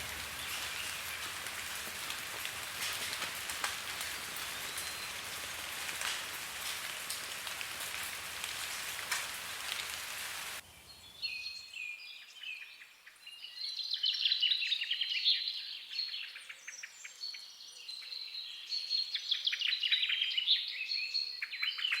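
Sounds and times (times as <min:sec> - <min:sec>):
steady rain: 0:00.0 - 0:10.6
small birds chirping: 0:00.0 - 0:22.0.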